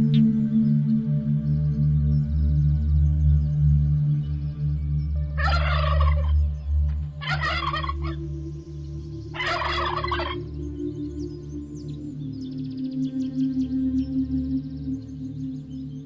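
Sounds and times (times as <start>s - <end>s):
turkey gobbling: 5.4s - 6.4s, 7.2s - 8.2s, 9.3s - 10.4s.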